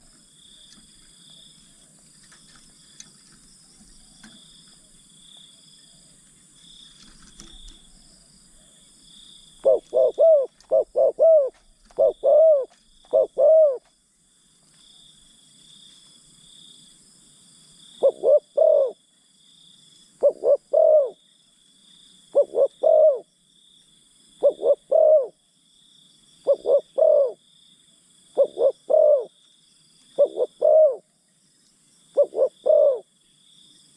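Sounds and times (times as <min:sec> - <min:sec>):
dove cooing: 0:09.6 - 0:13.9, 0:18.0 - 0:19.0, 0:20.2 - 0:21.2, 0:22.3 - 0:23.3, 0:24.4 - 0:25.4, 0:26.4 - 0:27.4, 0:28.4 - 0:29.3, 0:30.2 - 0:31.1, 0:32.2 - 0:33.1.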